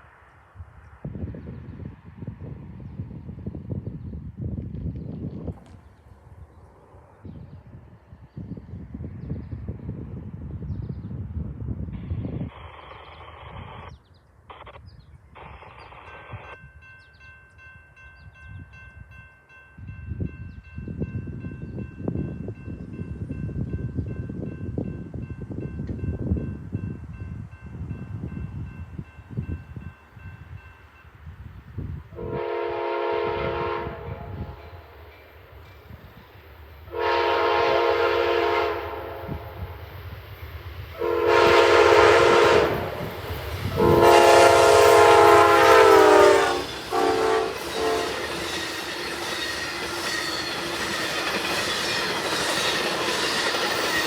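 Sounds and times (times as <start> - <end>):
railroad crossing bell ringing: 16.1 - 31.3, 41.5 - 54.0
locomotive air horn blasts: 32.2 - 34.9, 36.9 - 39.8, 41.0 - 43.0, 43.7 - 48.4.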